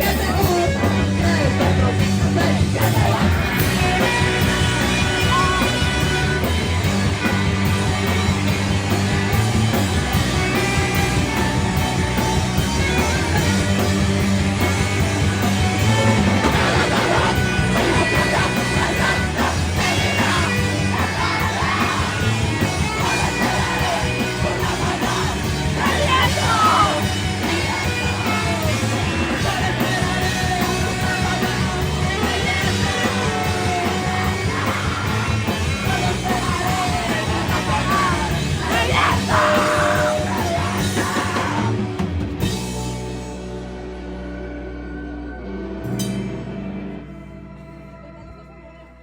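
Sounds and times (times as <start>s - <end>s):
person singing and yelling: 0.0s - 7.6s, 16.3s - 42.0s
loud rock music: 0.0s - 49.0s.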